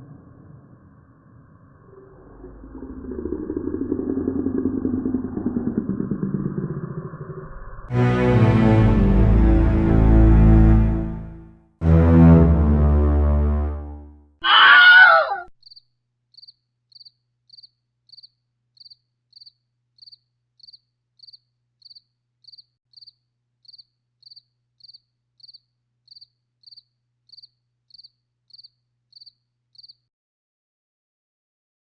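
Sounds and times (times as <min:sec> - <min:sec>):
dark low string music: 0:07.9 - 0:14.3
loud shrill screech: 0:14.4 - 0:15.4
cricket chirping: 0:15.6 - 0:30.1.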